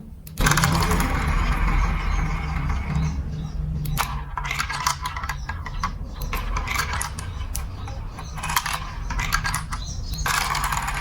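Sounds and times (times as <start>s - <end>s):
steady low hum: 0.0s - 11.0s
marbles clattering through marble run: 0.4s - 3.2s, 4.0s - 11.0s.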